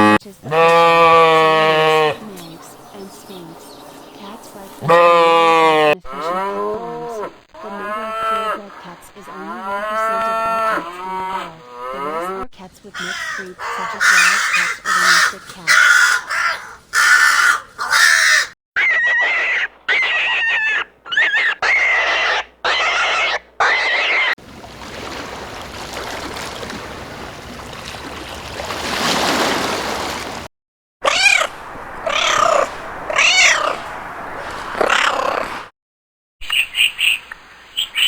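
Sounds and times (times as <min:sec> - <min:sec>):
cats meowing: 0:31.0 - 0:31.5, 0:32.1 - 0:33.8.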